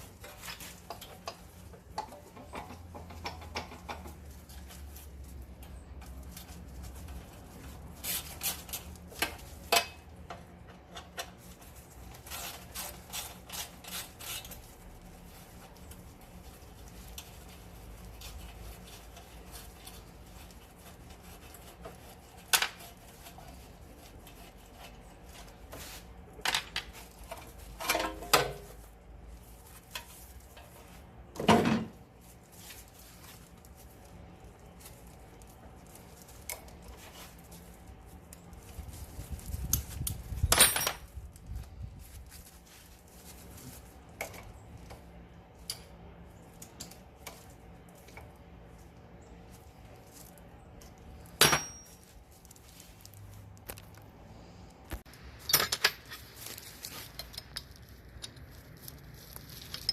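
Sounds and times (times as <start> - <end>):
metal tools clinking: 40.4 - 41.2, 51.3 - 52.2, 55.4 - 58.5, 59.4 - 59.9.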